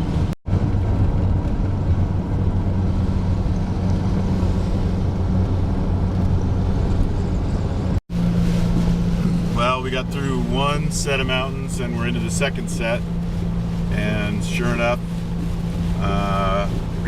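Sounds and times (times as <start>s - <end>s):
road and wind noise: 0.0s - 17.0s
van engine drone: 0.0s - 17.0s.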